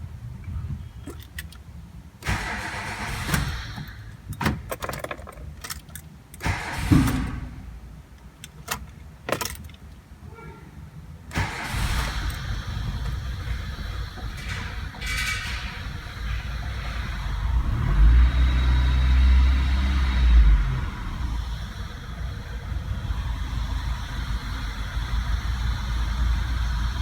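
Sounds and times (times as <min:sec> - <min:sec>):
car engine starting: 0:00.0 - 0:27.0
low rumble: 0:11.6 - 0:27.0.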